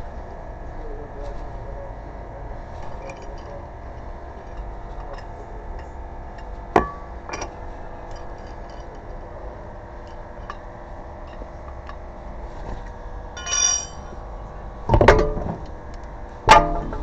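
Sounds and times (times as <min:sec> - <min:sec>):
metal tools clinking: 0:06.8 - 0:09.2, 0:13.4 - 0:14.1
sharp metallic clank: 0:13.4 - 0:14.1.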